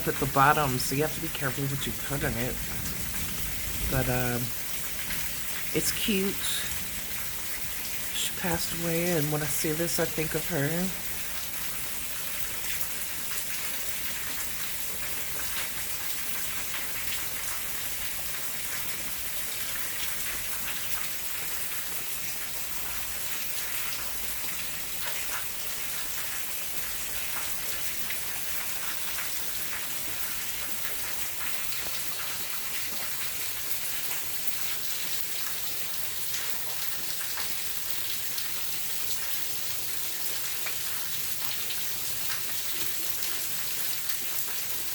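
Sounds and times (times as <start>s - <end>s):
drips and patters close by: 0.0s - 44.9s
steady rain falling: 0.0s - 44.9s.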